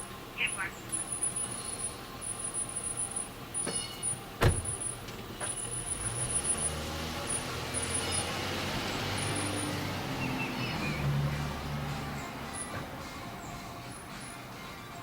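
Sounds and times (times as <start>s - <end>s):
car engine and tyre noise: 0.0s - 15.0s
sharp thump: 4.4s - 4.8s.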